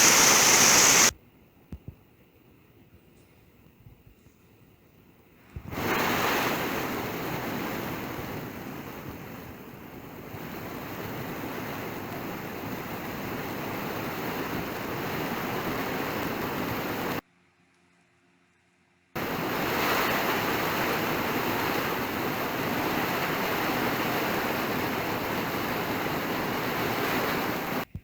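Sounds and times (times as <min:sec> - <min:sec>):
waterfall rushing: 0:00.0 - 0:01.1.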